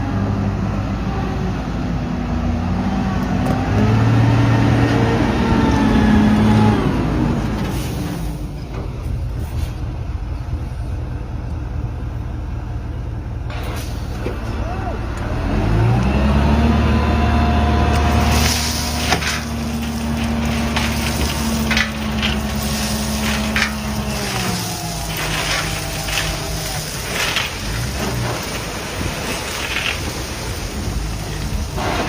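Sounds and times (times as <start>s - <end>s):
large engine running: 4.6s - 32.0s
crackling: 18.0s - 32.0s.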